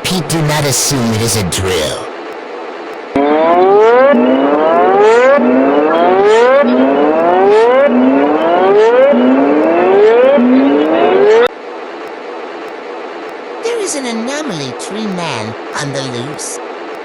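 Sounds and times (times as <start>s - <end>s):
electronic whooping alarm: 3.2s - 11.5s.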